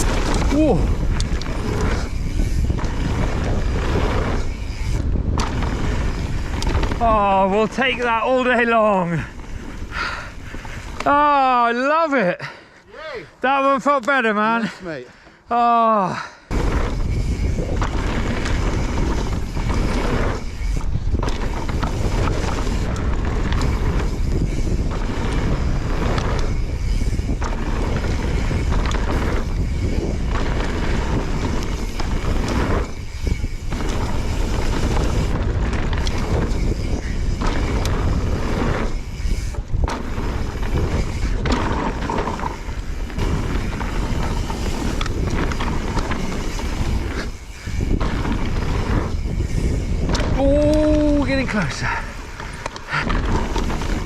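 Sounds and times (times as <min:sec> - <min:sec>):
wind on microphone: 0:00.0 - 0:11.2, 0:16.5 - 0:54.0
bike tyres rolling on dirt: 0:00.0 - 0:12.8, 0:13.4 - 0:54.0.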